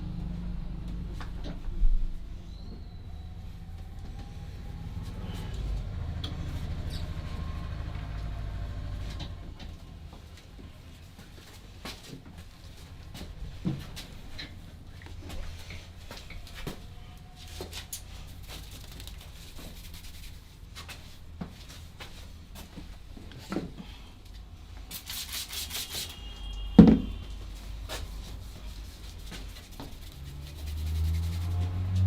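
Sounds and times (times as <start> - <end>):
hands rubbing and tapping on head: 17.7 - 22.2, 27.9 - 32.0.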